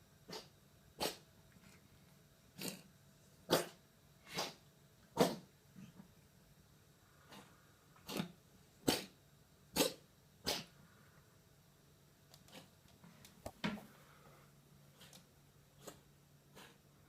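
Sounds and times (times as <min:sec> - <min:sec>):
cat coughing: 0:03.5 - 0:04.6, 0:05.2 - 0:05.9, 0:08.0 - 0:09.2.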